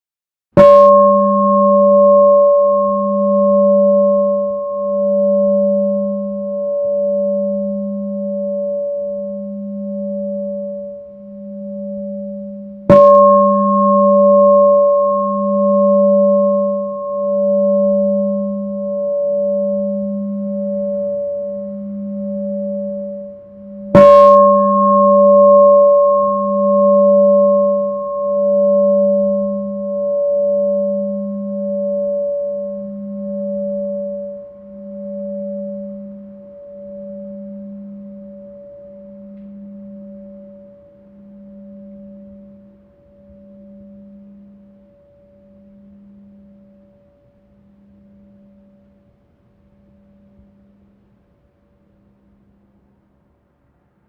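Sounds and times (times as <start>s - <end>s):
temple bell ringing: 12.9s - 40.7s.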